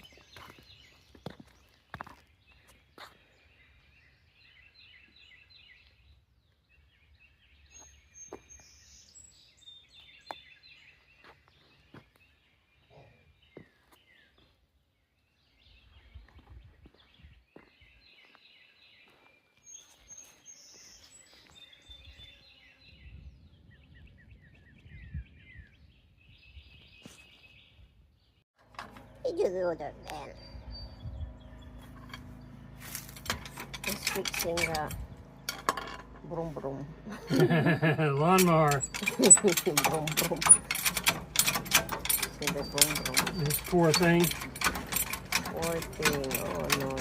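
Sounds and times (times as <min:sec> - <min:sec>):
songbirds chirping: 0:00.0 - 0:47.0
low background rumble: 0:28.6 - 0:47.0.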